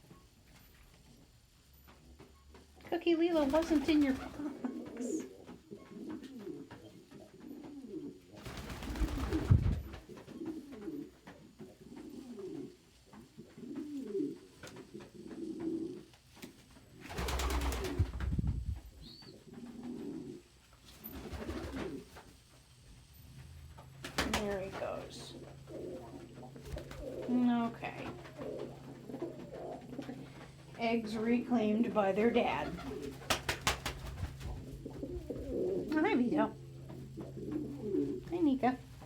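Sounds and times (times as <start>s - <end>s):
pigeons cooing: 3.4s - 18.1s, 18.8s - 39.0s
rustling noise: 8.9s - 27.3s.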